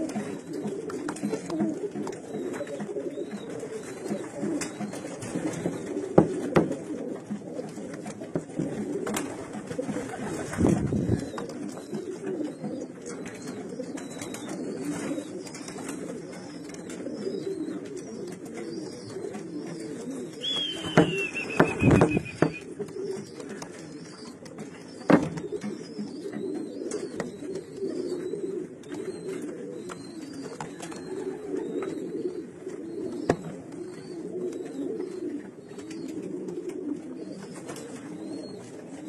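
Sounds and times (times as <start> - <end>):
pigeons cooing: 0.0 - 39.0
sharp taps: 20.5 - 22.6.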